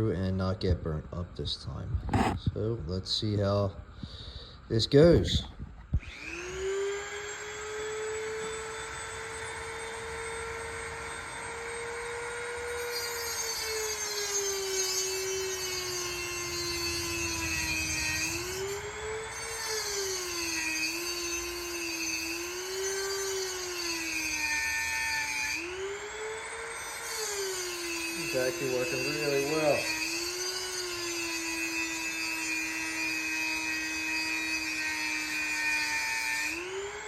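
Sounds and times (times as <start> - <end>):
harsh cutting noise: 2.1 - 2.4, 12.7 - 37.0
rotary tool whining: 2.1 - 2.4, 5.9 - 37.0.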